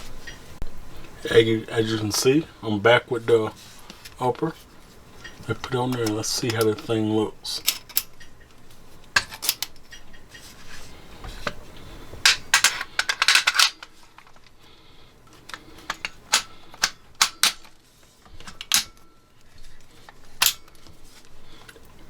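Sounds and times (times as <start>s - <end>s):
gun parts metal clicks: 7.6s - 8.4s, 12.3s - 14.6s, 15.5s - 17.8s, 18.4s - 19.1s, 20.4s - 20.9s.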